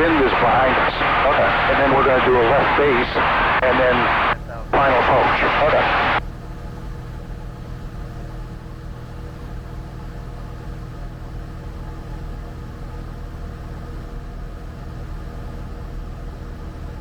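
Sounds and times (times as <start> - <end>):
propeller plane engine droning: 0.0 - 6.2.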